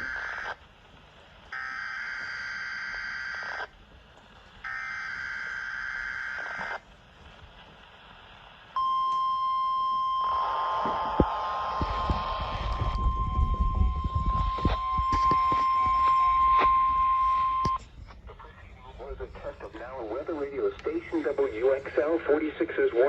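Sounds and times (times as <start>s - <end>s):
noise: 0.0s - 23.0s
steady alarm tone: 1.6s - 3.7s, 4.7s - 6.8s, 8.8s - 17.8s
buzzy digital data bursts: 10.2s - 17.8s.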